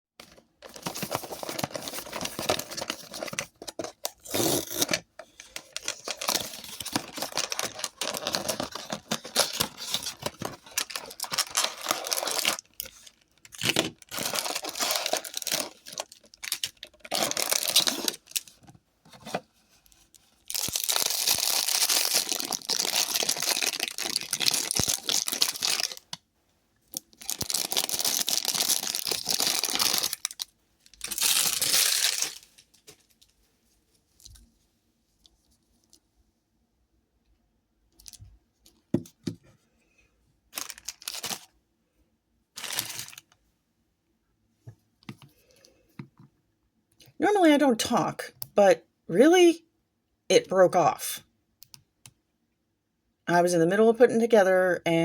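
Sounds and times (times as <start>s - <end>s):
packaging tearing and crinkling: 0.2s - 18.6s, 20.4s - 26.2s, 26.9s - 32.6s, 40.6s - 41.5s, 42.6s - 43.3s.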